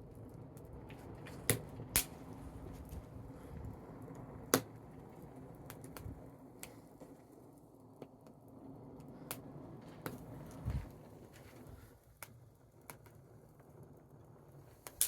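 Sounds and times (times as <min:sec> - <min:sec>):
wood fire crackling: 0:00.0 - 0:15.0
sharp fire pops: 0:00.2 - 0:03.2, 0:04.1 - 0:07.0, 0:14.7 - 0:15.0.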